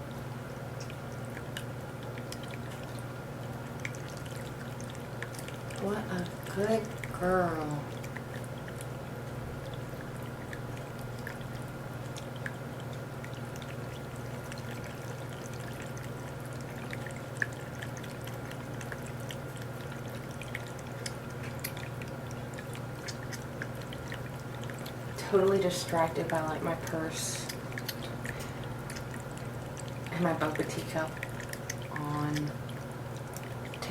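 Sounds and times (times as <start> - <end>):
pump humming: 0.0 - 33.9
water trickling: 0.0 - 33.9.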